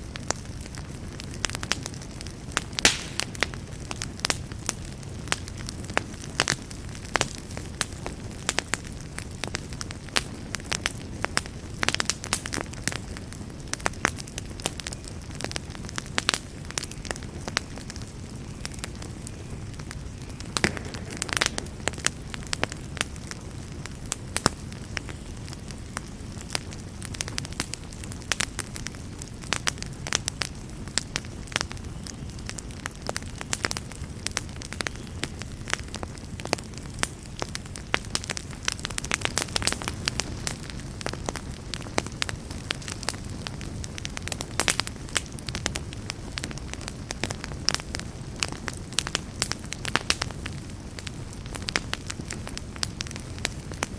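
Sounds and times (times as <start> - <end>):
wood fire crackling and popping: 0.0 - 53.9.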